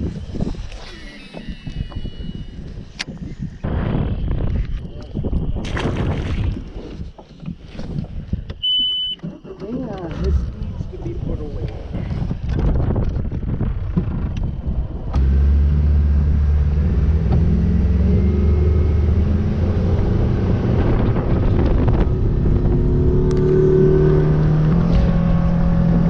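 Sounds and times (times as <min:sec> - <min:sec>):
outboard motor running: 0:00.0 - 0:03.8.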